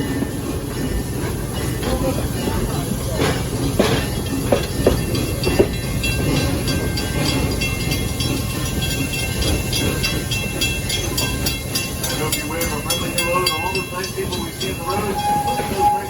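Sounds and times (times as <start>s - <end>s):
train rumbling on track: 0.0s - 16.0s
wheels knocking over rail joints: 3.2s - 7.7s.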